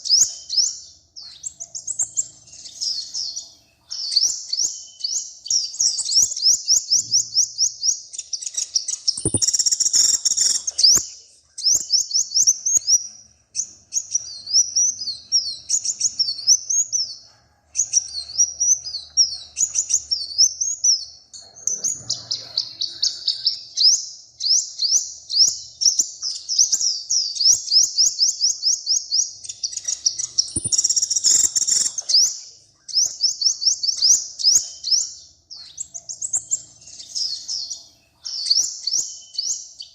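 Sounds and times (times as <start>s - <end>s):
songbird rapid high chirps: 0.0s - 39.9s
sharp click: 9.1s - 11.1s, 30.4s - 31.9s.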